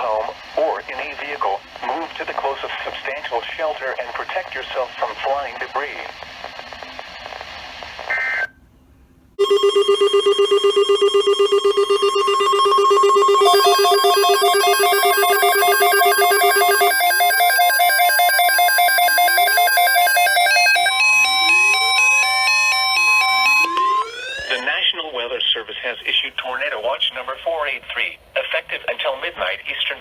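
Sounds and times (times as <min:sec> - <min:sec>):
radio hiss: 0:00.0 - 0:08.5, 0:23.7 - 0:30.0
electronic alert beeping tones: 0:09.4 - 0:24.7
two-tone data burst: 0:11.2 - 0:24.8
electronic jingle with rising sweeps: 0:12.4 - 0:24.6.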